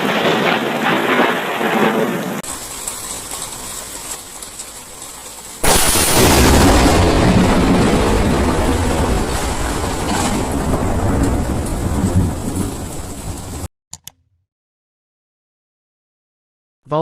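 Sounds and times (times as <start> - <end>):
thunderclap: 0.0 - 13.7
rain-like hiss: 2.4 - 7.2
low thunder rumble: 5.6 - 13.7.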